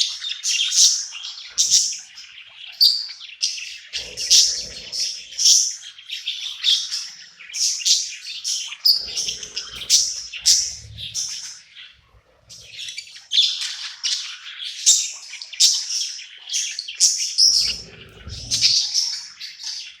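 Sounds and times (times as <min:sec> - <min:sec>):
budgerigar chirping: 0:02.7 - 0:11.9, 0:12.5 - 0:19.2
low rumbling noise: 0:09.0 - 0:13.0, 0:17.6 - 0:19.0.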